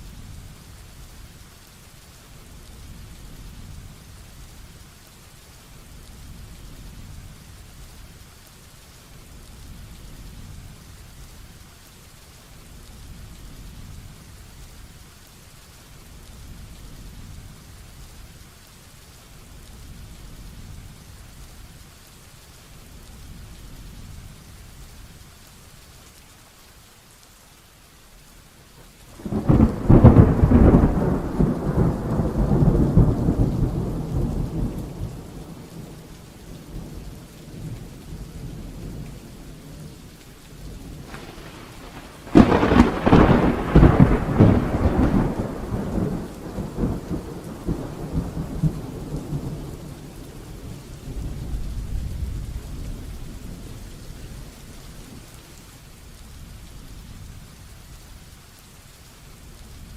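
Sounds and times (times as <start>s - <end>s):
heavy rain: 0.0s - 59.9s
thunder rumbling: 29.1s - 40.0s, 40.6s - 55.6s.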